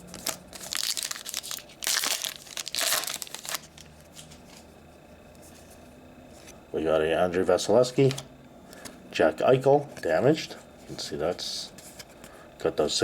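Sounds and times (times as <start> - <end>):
card pack wrapper tearing: 0.0 - 3.9.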